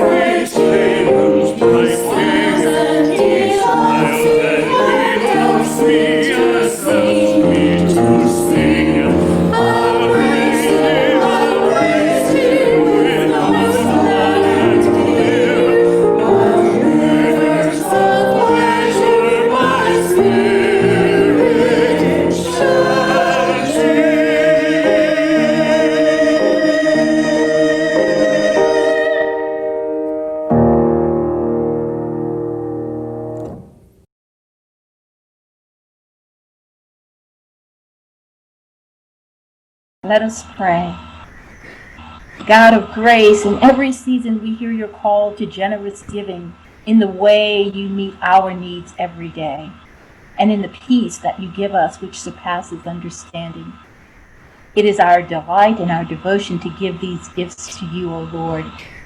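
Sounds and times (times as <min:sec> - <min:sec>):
choir singing sacred piece: 0:00.0 - 0:30.2, 0:40.4 - 0:59.0
keyboard chord: 0:00.0 - 0:33.8.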